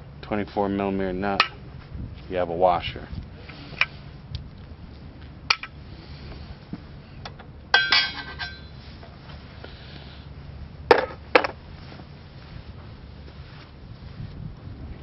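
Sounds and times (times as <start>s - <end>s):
steel hardware clinking on metal: 7.7s - 8.8s.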